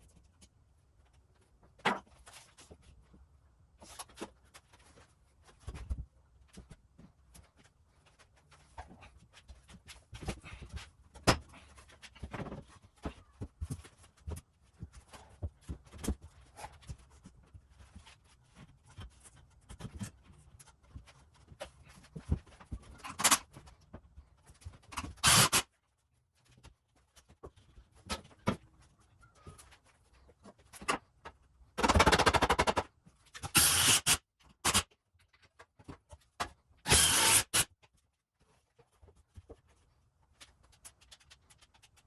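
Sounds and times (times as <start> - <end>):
power tool bursts: 25.2 - 25.6, 33.5 - 34.8, 36.9 - 37.7.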